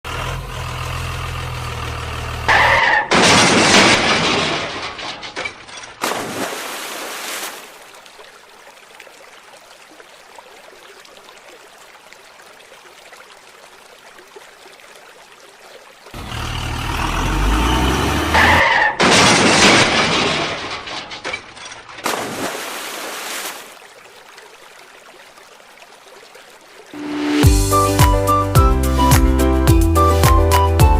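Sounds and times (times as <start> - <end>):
vehicle engine running: 0.0 - 2.8, 16.2 - 18.6.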